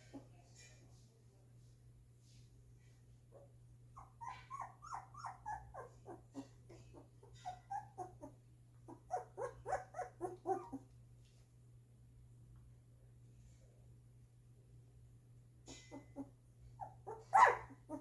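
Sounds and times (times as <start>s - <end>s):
puppies whimpering: 4.0s - 10.8s, 15.9s - 18.0s.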